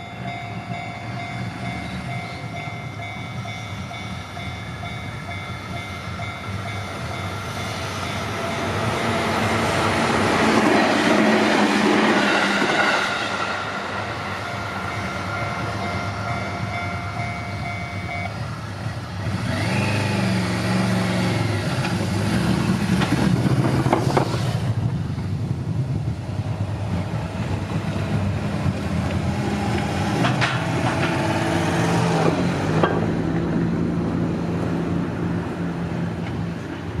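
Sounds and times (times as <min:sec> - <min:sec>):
level crossing warning bell: 0:00.0 - 0:09.6, 0:14.0 - 0:18.7
road vehicles passing: 0:00.0 - 0:37.0
train passing with loud rush: 0:00.0 - 0:37.0.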